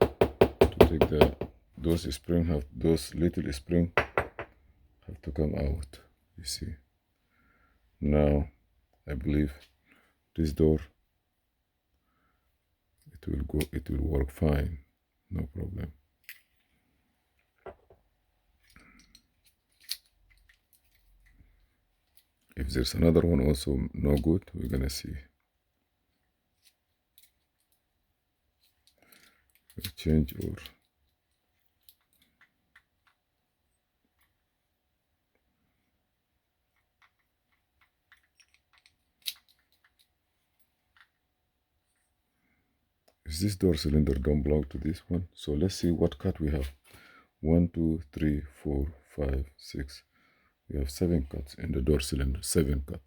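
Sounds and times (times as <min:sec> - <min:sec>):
small metal parts clicking: 0:18.6 - 0:22.5, 0:26.6 - 0:27.9, 0:28.6 - 0:33.2, 0:36.7 - 0:41.2.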